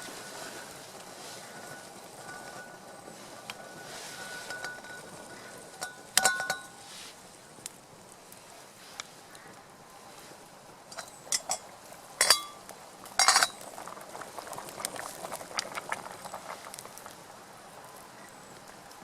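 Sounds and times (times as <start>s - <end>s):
crackling and bubbling: 0.0s - 19.0s
cookware rattle: 5.8s - 6.8s, 12.2s - 12.6s, 13.2s - 13.6s
metal cookware clinking: 5.8s - 6.9s, 10.9s - 12.6s, 13.2s - 13.6s.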